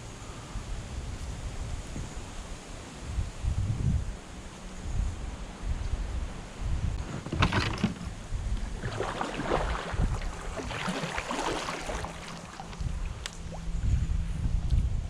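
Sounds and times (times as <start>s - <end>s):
wind buffeting microphone: 3.1s - 4.2s, 4.8s - 15.0s
water splashing against kayak hull: 7.0s - 13.8s.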